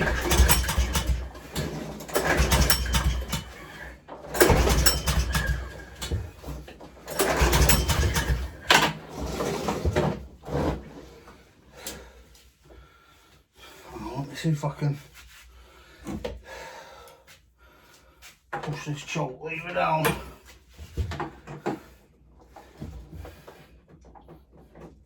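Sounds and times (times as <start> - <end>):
lawnmower engine pull-starting: 0.0 - 11.3.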